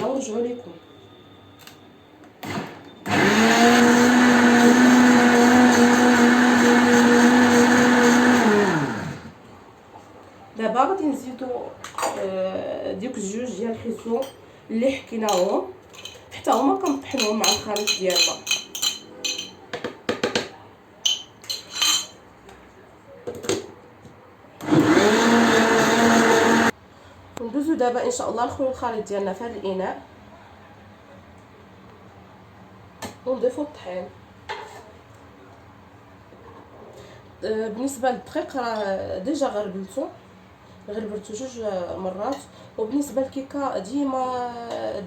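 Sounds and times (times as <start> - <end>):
electric blender motor: 2.5 - 9.3, 24.6 - 26.7.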